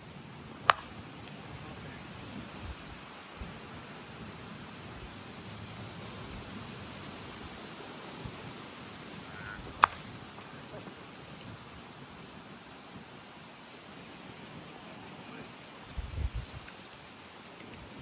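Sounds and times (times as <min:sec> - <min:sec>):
bat hitting ball crack: 0:00.6 - 0:01.4, 0:09.2 - 0:10.6
wind buffeting microphone: 0:00.9 - 0:08.6, 0:15.9 - 0:16.7.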